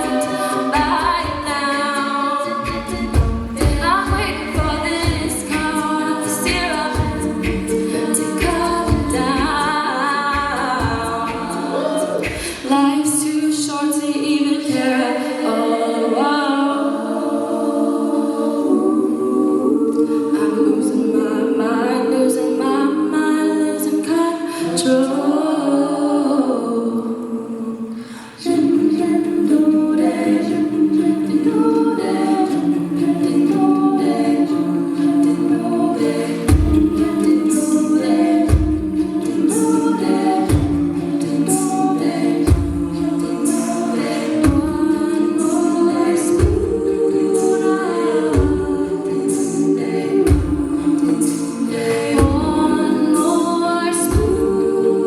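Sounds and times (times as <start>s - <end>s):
beatboxed bass-drum pulse: 0.0s - 1.8s, 2.5s - 12.7s, 36.5s - 37.7s, 38.4s - 41.7s, 42.4s - 43.6s, 44.4s - 45.0s, 46.2s - 47.0s, 50.2s - 51.4s
a cappella group singing harmonies: 0.0s - 55.0s.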